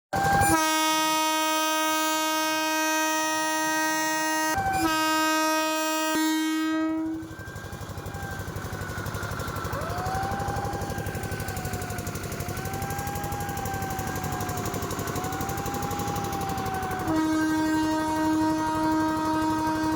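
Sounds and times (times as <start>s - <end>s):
train horn blasts: 0.2s - 7.7s, 15.5s - 19.9s.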